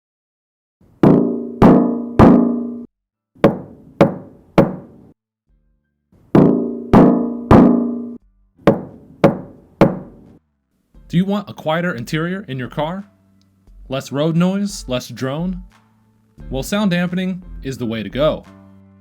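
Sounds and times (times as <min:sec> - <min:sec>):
knocks on car sheet metal: 0:01.0 - 0:02.7, 0:03.4 - 0:05.0, 0:06.4 - 0:08.1, 0:08.7 - 0:10.3.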